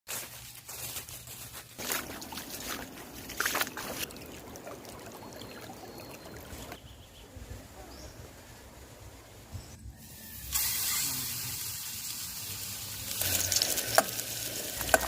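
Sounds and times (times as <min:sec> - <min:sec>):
water splashing and trickling: 0:01.8 - 0:07.0, 0:10.1 - 0:15.0.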